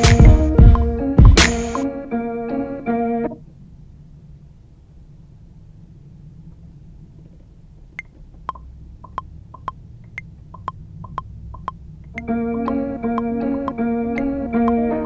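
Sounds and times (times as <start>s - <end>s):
full music beat: 0.0s - 1.9s, 12.2s - 15.0s.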